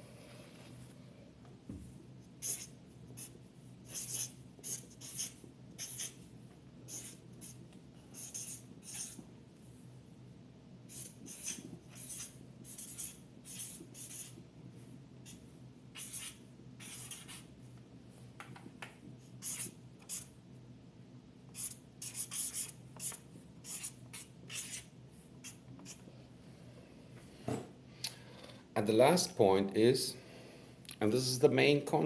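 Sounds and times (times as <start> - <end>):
pen scratching on paper: 2.4 - 6.2, 6.9 - 7.6, 8.2 - 9.2, 10.9 - 14.4, 16.0 - 17.5, 19.4 - 20.3, 21.6 - 26.0.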